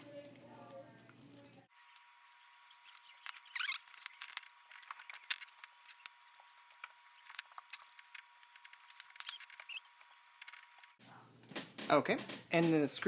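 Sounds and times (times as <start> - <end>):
short squeak: 1.8 - 7.9, 8.7 - 11.0
screwdriver clicks and metal scrapes: 1.8 - 11.0.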